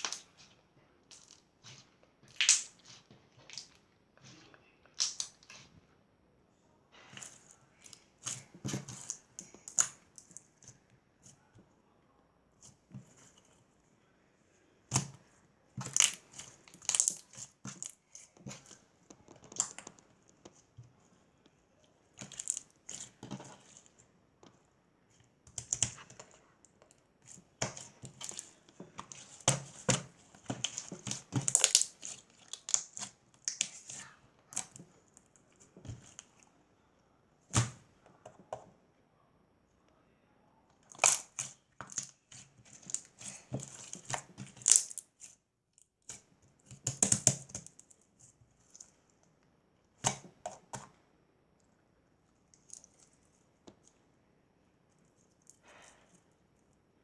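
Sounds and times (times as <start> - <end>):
rustling and crinkling: 0.0 - 4.6, 14.9 - 36.5, 40.8 - 50.9.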